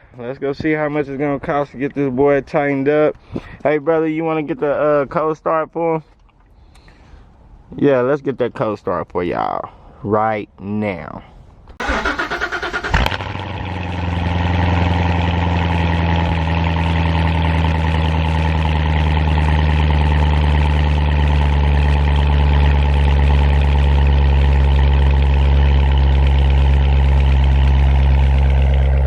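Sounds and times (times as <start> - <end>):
car engine idling: 11.8 - 29.0.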